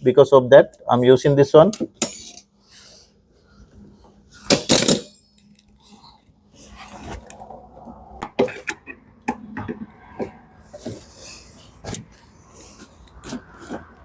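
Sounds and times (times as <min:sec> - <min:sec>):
metal tools clinking and knocking: 0:01.7 - 0:02.5, 0:04.5 - 0:05.6.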